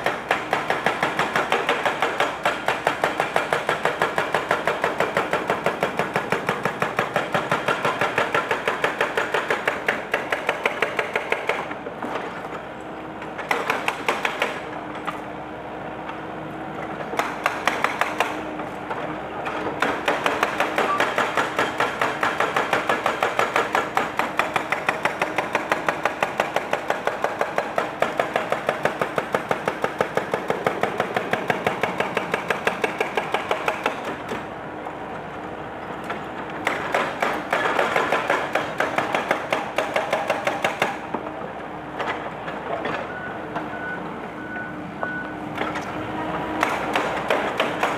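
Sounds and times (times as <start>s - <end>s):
hydraulic breaker hammering concrete: 0.0s - 12.5s, 13.2s - 15.2s, 16.9s - 18.7s, 19.5s - 34.5s, 36.6s - 41.3s, 46.6s - 47.9s
excavator engine running: 0.0s - 47.9s.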